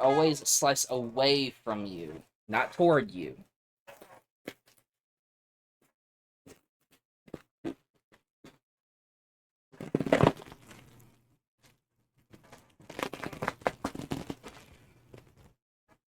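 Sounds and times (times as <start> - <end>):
plastic wrapping tearing: 12.9 - 14.7.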